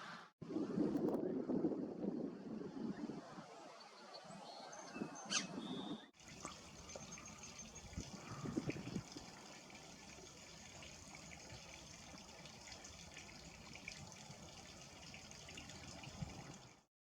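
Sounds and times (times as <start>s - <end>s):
outdoor background hiss: 6.2s - 16.8s.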